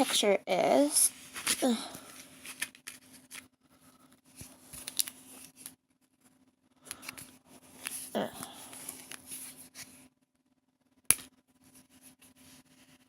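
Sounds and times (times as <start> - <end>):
packaging rustling and clicks: 4.4 - 5.8.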